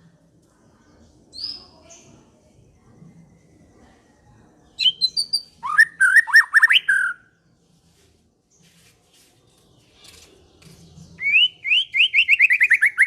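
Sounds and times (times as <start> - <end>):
songbird whistling: 4.8 - 7.3, 11.2 - 13.0.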